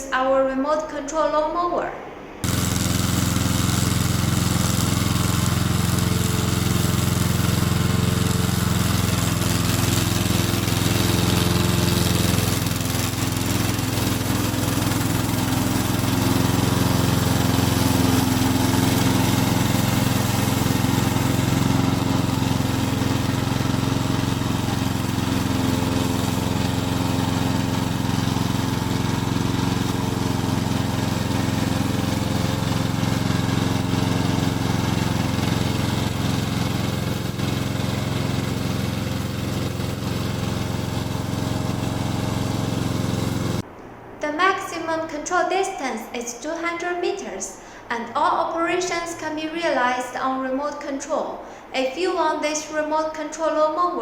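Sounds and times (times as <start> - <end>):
lawn mower engine running: 2.4 - 43.7.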